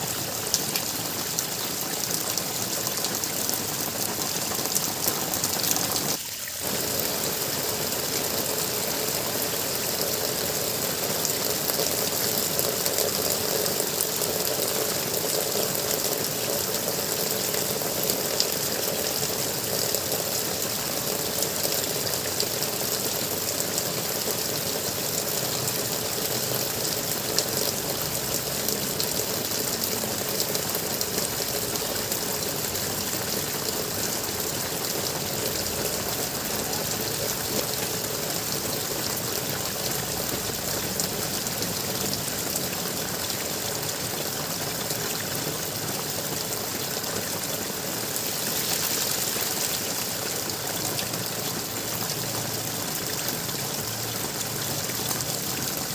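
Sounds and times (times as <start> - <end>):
water gurgling and flowing: 0.0 - 55.9.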